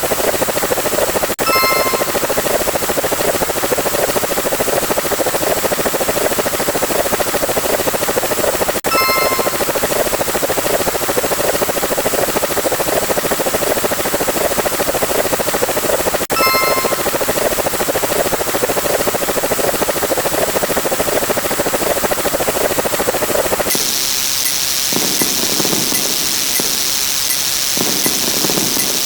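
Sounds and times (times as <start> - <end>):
high beep: 1.4 - 2.3, 8.9 - 9.8, 16.3 - 17.2.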